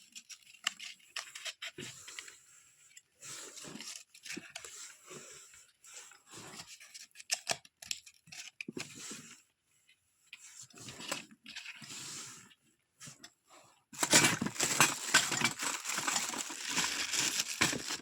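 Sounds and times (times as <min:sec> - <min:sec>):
plastic packaging crinkling: 0:14.0 - 0:18.0.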